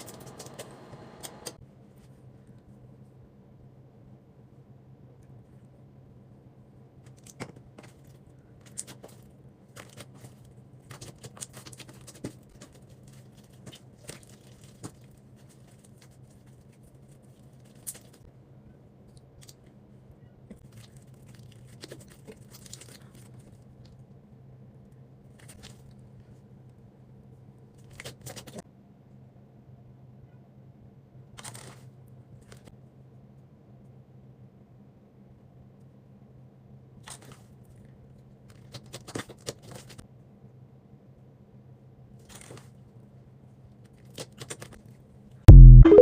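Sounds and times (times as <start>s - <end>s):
steady low hum: 45.5s - 46.0s.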